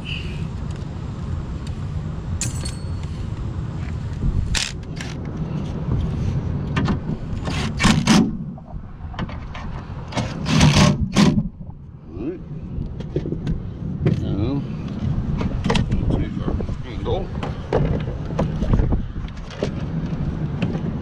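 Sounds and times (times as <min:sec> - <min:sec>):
steady low rumble: 0:00.0 - 0:10.1, 0:11.4 - 0:21.0
clicks and knocks of car parts: 0:06.7 - 0:11.5, 0:17.4 - 0:18.7.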